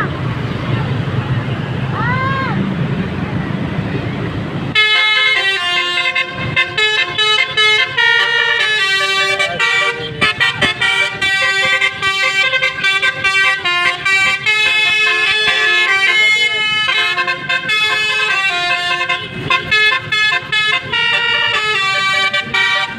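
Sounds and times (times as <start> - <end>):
musical air horn: 4.8 - 22.9.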